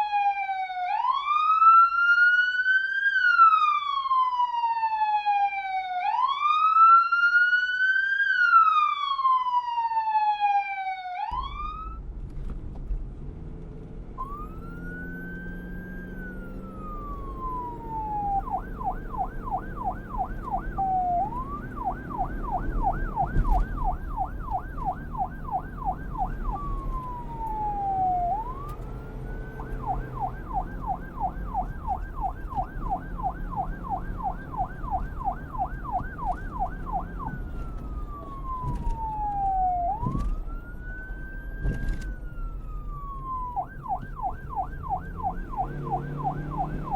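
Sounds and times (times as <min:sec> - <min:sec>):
police siren wailing: 0:00.0 - 0:12.0, 0:14.2 - 0:46.9
police siren yelping: 0:00.0 - 0:12.0, 0:14.2 - 0:46.9
low rumble: 0:11.4 - 0:14.2.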